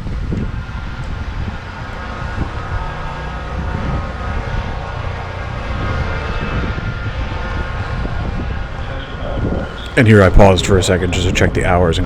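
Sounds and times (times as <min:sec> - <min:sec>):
faint whine: 0:00.0 - 0:12.0
mechanical drone with low rumble: 0:00.0 - 0:12.0.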